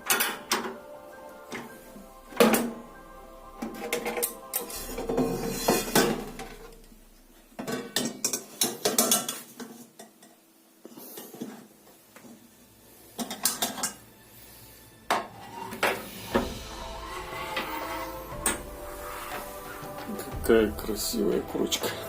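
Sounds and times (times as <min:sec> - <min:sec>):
metal dishes clinking: 0:03.6 - 0:06.8, 0:07.5 - 0:10.4, 0:13.2 - 0:14.0.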